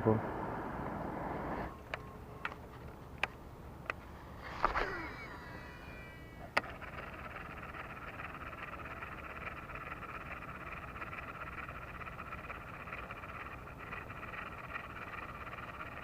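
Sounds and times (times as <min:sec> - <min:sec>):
frogs calling: 0:04.4 - 0:16.0.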